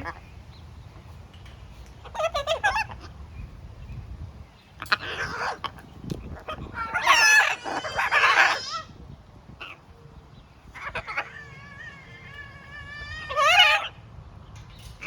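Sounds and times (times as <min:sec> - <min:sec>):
parrot squawks: 0:06.4 - 0:09.0, 0:10.8 - 0:13.9.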